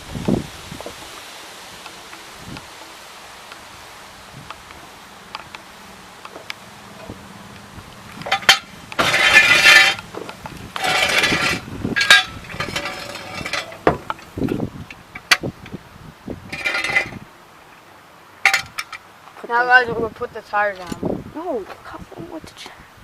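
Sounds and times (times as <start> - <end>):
rattling bursts: 1.8 - 15.8, 16.4 - 17.3
metal clinks from car jack: 8.2 - 14.6, 16.5 - 17.2.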